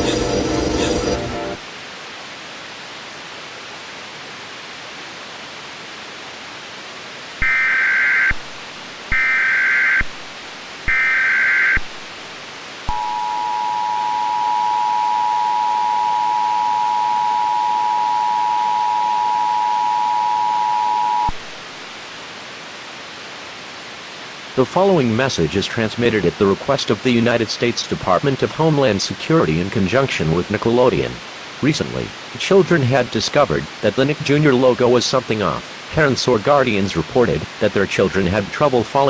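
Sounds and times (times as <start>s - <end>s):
steady hiss: 0.0s - 39.0s
warbling data bursts: 10.9s - 11.9s, 12.9s - 21.4s
two-tone attention signal: 12.9s - 21.4s.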